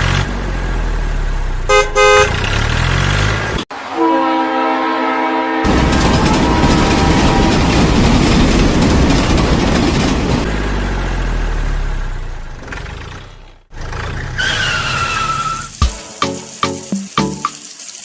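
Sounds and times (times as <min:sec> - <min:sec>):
plucked or struck notes: 0:15.8 - 0:17.6.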